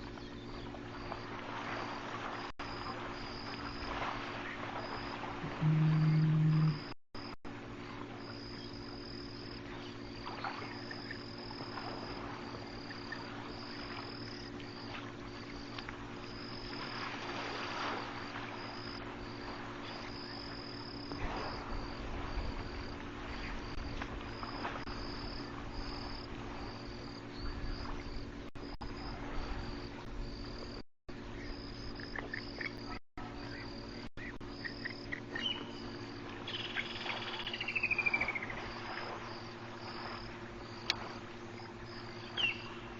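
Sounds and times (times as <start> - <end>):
low hum: 5.2 - 7.0
short falling call: 5.4 - 6.8
insects trilling: 8.2 - 42.9.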